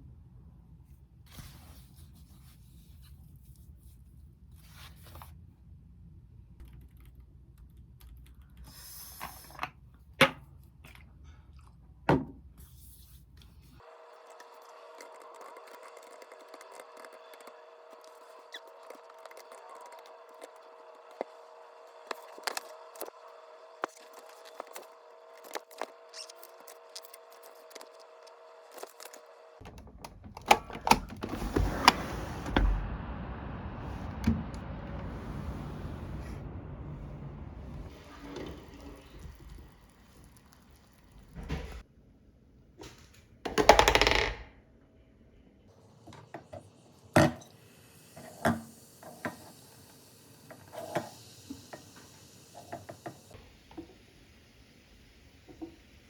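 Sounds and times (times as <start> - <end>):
low two-tone hum: 29.6 - 41.8.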